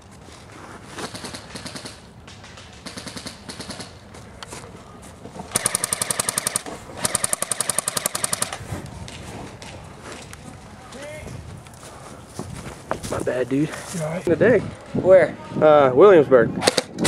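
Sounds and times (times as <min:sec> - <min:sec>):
airsoft guns firing bursts: 0:01.1 - 0:04.1, 0:05.5 - 0:08.7.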